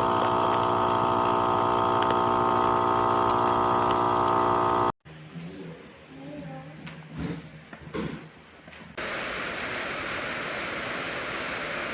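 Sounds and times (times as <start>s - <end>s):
espresso machine pump humming: 0.0s - 5.0s.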